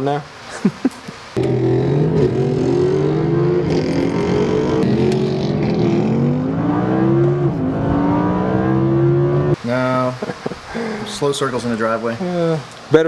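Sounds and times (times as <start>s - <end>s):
loud sports car exhaust: 1.4s - 9.6s.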